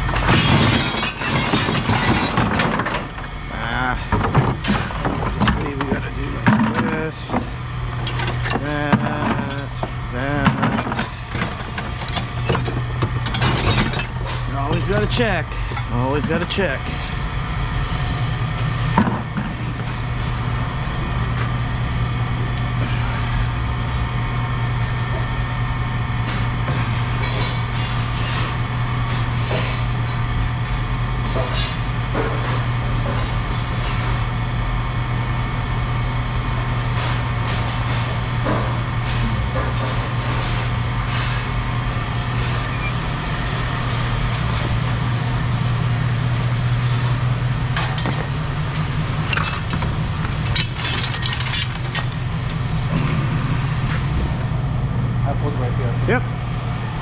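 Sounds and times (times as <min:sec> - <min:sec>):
scrap metal clanking: 0:00.0 - 0:03.3, 0:04.0 - 0:17.1, 0:49.2 - 0:54.2
motor humming: 0:00.0 - 0:57.0.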